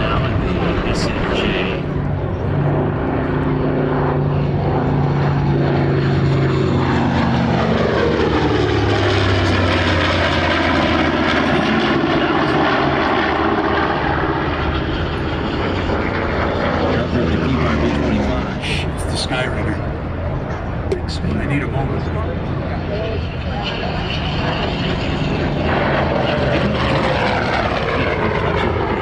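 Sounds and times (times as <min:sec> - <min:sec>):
propeller plane passing by: 0:00.0 - 0:29.0.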